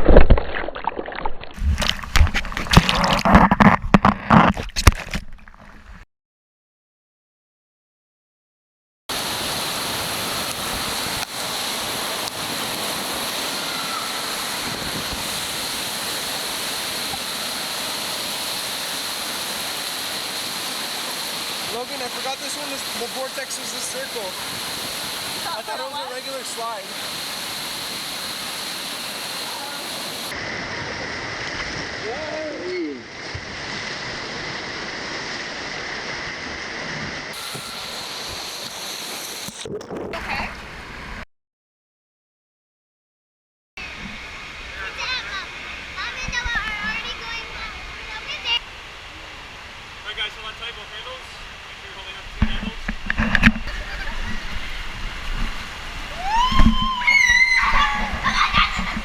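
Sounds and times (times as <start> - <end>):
water rushing and splashing: 0.0 - 6.0, 9.1 - 41.2, 43.8 - 59.0.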